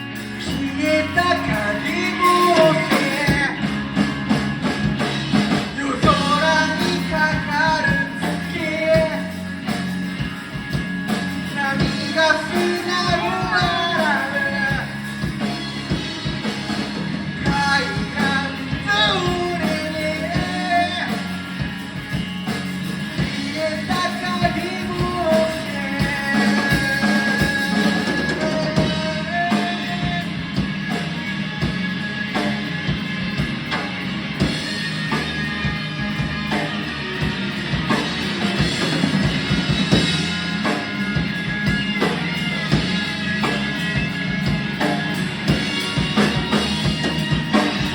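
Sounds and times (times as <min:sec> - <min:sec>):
person singing: 0:00.0 - 0:04.3, 0:05.0 - 0:10.5, 0:11.4 - 0:31.1
drum kit: 0:00.0 - 0:47.9
guitar: 0:00.0 - 0:47.9.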